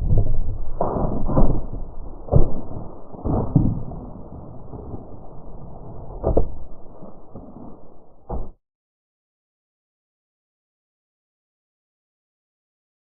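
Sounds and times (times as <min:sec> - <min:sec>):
low rumbling on microphone: 0:00.0 - 0:08.6.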